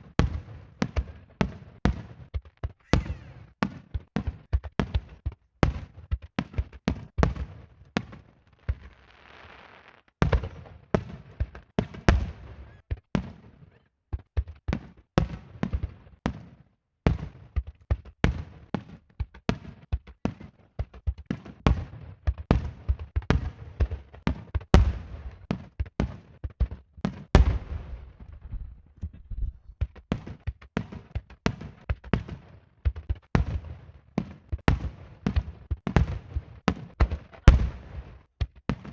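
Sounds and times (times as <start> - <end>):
fireworks bursting: 2.8 - 5.0, 5.7 - 13.3, 29.7 - 38.9.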